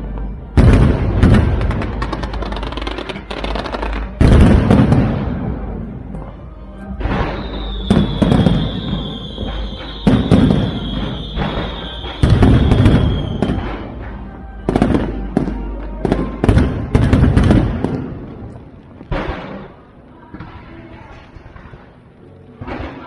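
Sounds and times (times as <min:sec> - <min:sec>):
firework shells booming: 0:00.6 - 0:19.9
firework whistle falling in pitch: 0:07.1 - 0:13.9.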